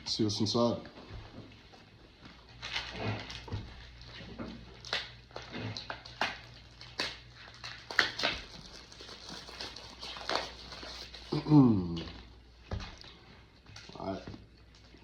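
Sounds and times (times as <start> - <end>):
cellophane and cardboard tearing: 2.6 - 4.1, 4.7 - 12.0.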